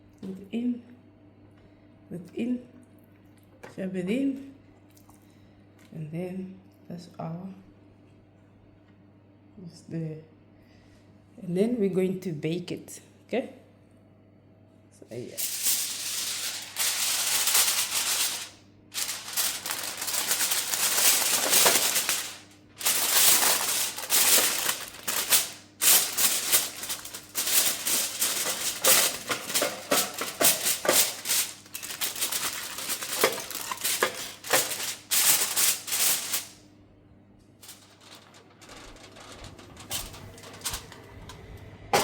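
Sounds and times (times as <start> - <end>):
wrapping crumpled by hand: 15.3 - 36.6, 37.6 - 41.0.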